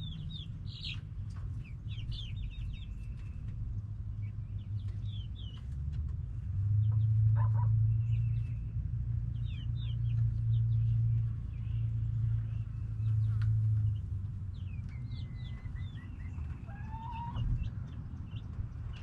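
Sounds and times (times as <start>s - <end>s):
steady low rumble: 0.0s - 19.0s
chicken clucking: 14.6s - 19.0s.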